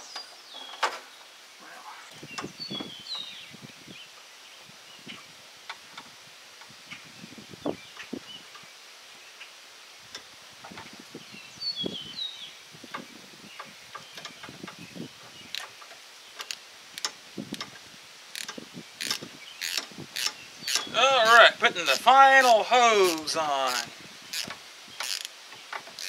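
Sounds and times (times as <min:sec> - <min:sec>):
hand tools clicking and knocking: 0:24.4 - 0:26.0.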